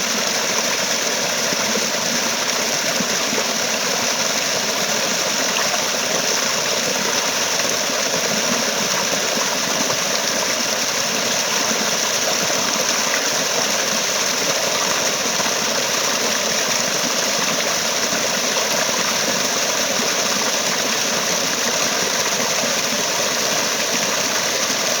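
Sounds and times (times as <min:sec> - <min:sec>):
stream water rushing: 0:00.0 - 0:25.0.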